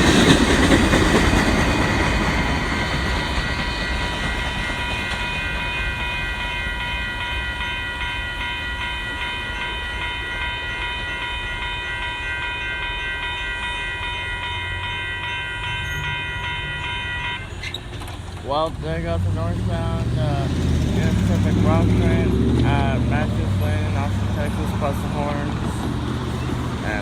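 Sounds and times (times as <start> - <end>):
crossing warning bell ringing: 0.0 - 27.0
freight cars rumbling past: 14.2 - 27.0.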